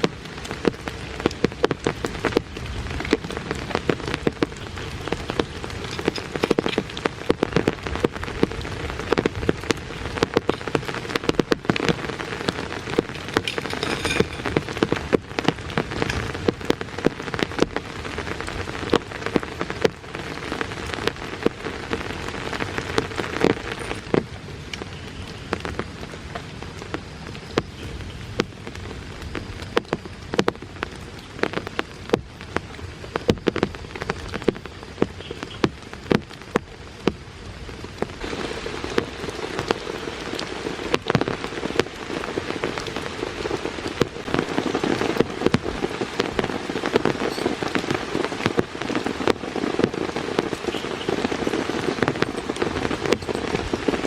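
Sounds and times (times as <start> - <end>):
raindrops tapping on a surface: 0.0 - 54.0.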